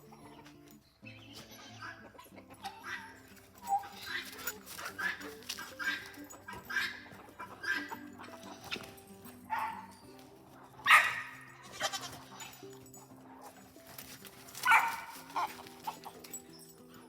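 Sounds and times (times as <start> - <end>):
background music: 0.0 - 17.0
goats bleating: 1.2 - 12.8, 14.4 - 16.2.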